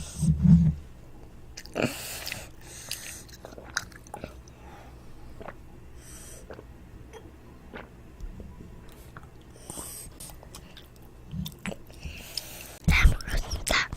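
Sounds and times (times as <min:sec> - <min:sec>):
child chewing toast: 0:01.6 - 0:04.6, 0:08.9 - 0:12.6.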